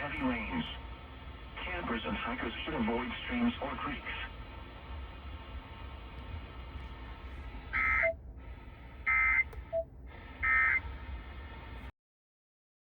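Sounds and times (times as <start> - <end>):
radio hiss: 0.0 - 11.9
digital data tone bursts: 10.4 - 10.8.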